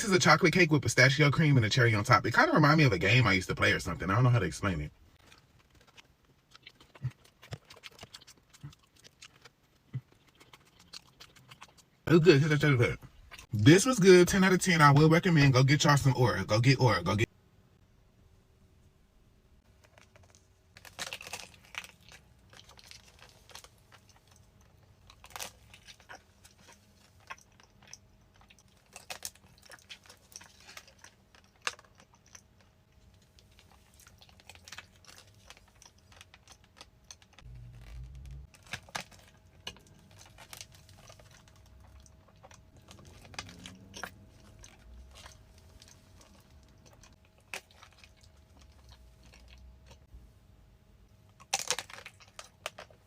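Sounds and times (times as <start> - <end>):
chewing and biting pastries: 2.0 - 15.0, 19.6 - 50.1, 51.1 - 53.0
crisp crunches: 3.2 - 13.5, 19.7 - 50.1, 51.3 - 53.0.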